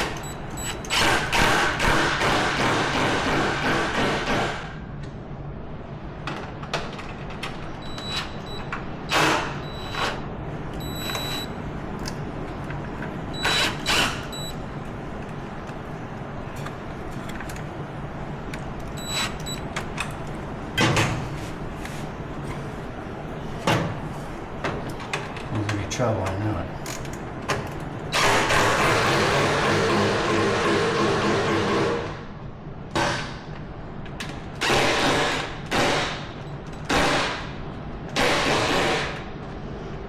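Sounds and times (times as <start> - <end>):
steady low hum: 0.0 - 28.8.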